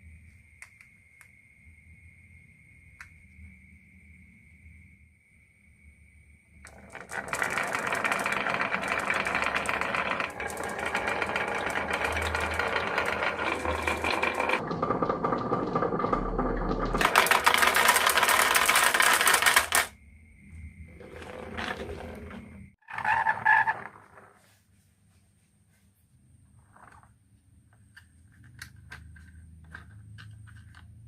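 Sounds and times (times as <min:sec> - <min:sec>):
marbles clattering down wooden run: 0:06.7 - 0:19.9, 0:21.0 - 0:23.9.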